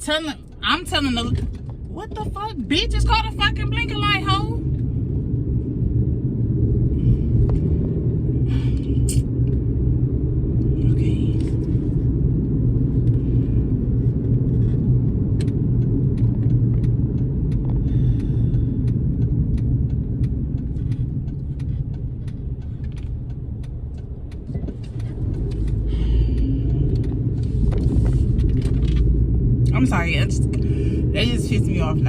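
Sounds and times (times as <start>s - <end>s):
car road noise inside cabin: 0.0s - 32.0s.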